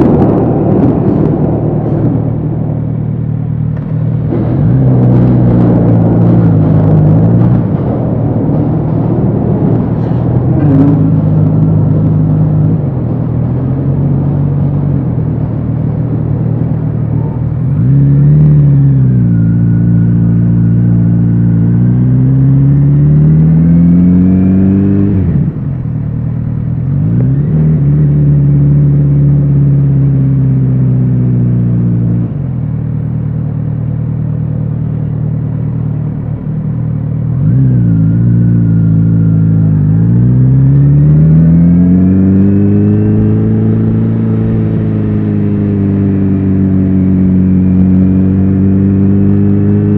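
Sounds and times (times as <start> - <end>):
motorcycle engine revving: 37.2 - 49.9.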